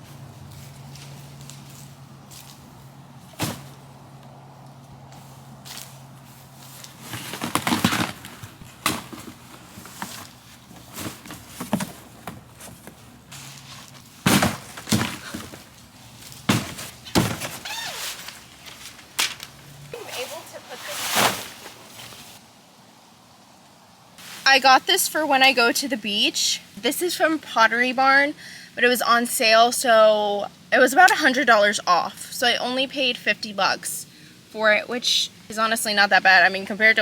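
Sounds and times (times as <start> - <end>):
irregular bursts of noise: 15.6 - 25.8.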